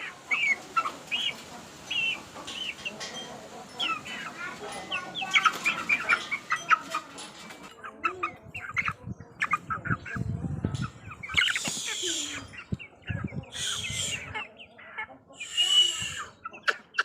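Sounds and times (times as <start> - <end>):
chickens chirping and clucking: 0.0 - 17.0.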